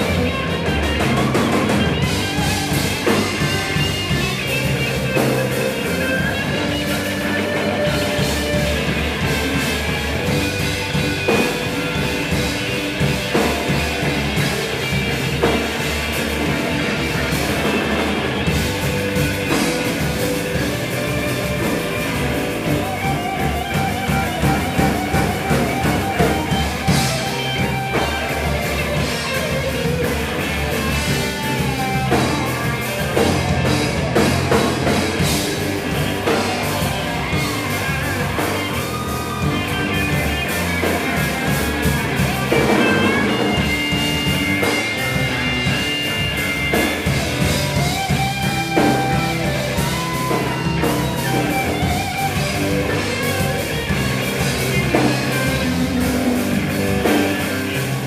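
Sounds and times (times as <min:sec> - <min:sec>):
bass and drums: 0:00.0 - 0:58.0
electric guitar lead: 0:00.0 - 0:58.0.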